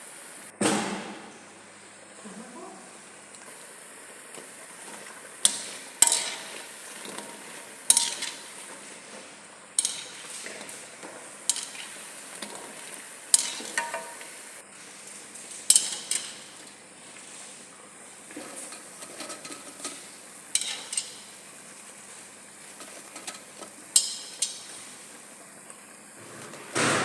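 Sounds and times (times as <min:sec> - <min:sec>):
oil sizzling: 0:03.0 - 0:27.0
utensil clinking against pot: 0:05.4 - 0:08.6, 0:09.8 - 0:14.3, 0:15.7 - 0:16.6, 0:18.6 - 0:21.4, 0:22.8 - 0:24.8.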